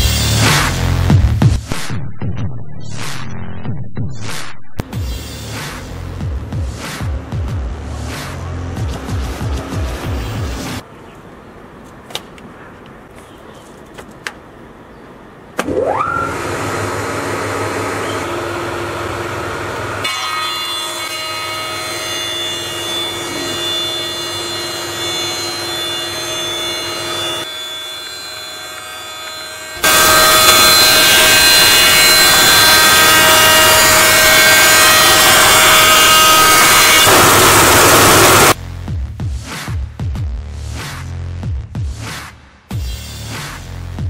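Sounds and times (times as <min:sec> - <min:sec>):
jointer planer whine: 0:15.6 - 0:38.6
board being planed: 0:19.6 - 0:38.6.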